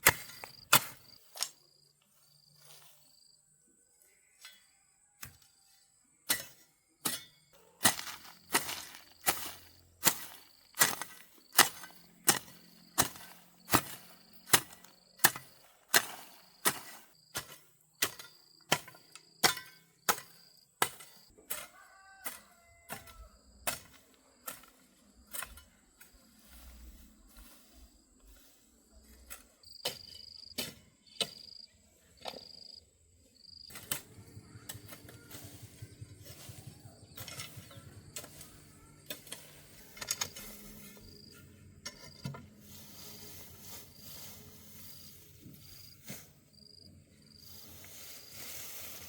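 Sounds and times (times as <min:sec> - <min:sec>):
hand tool striking wood: 0:06.3 - 0:24.7.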